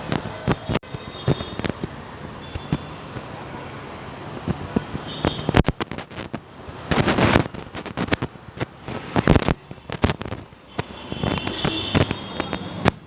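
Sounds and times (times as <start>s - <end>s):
firecrackers cracking and banging: 0.0s - 1.9s, 4.4s - 13.0s.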